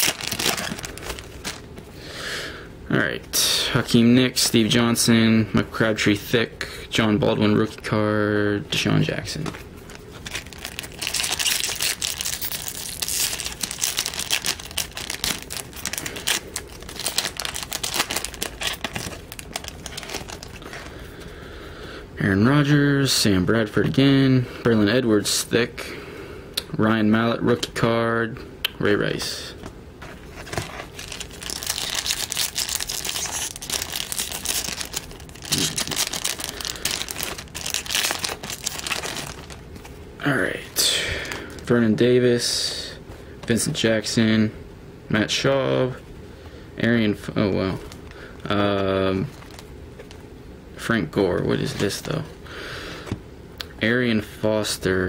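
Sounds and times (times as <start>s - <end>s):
foil wrapper tearing and crinkling: 0.0s - 1.7s, 10.1s - 20.8s, 30.4s - 39.6s, 49.2s - 50.2s.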